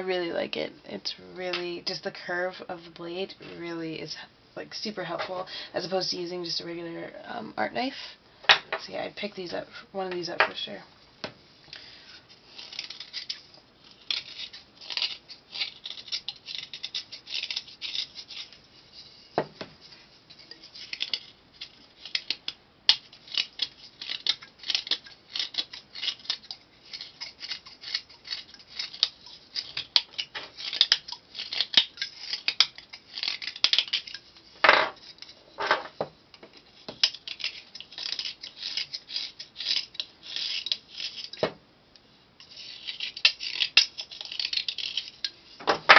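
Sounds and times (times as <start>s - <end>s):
knife scraping clay: 11.7s - 41.5s, 42.4s - 45.9s.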